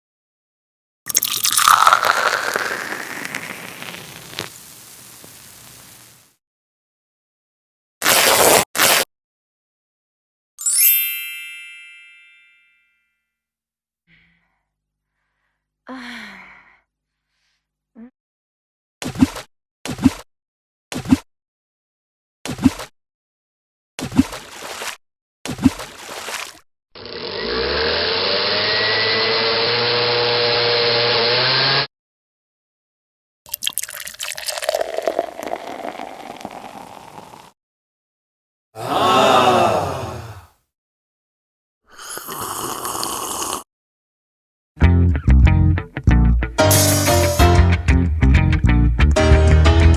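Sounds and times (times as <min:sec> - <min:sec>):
crackles and clicks: 0:01.4 - 0:06.4
bright ding: 0:10.6 - 0:13.0
blender motor running: 0:27.0 - 0:31.9, 0:42.2 - 0:43.6
breathy falling sigh: 0:38.8 - 0:40.6.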